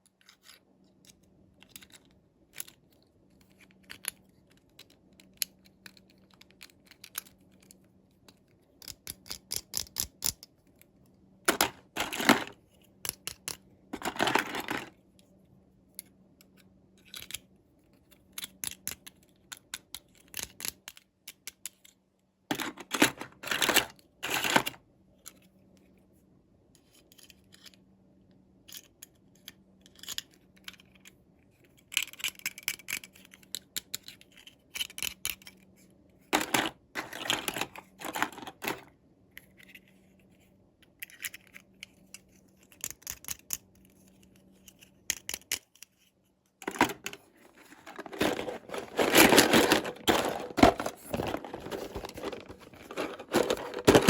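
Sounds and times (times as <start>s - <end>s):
packaging tearing and rustling: 46.8s - 54.0s.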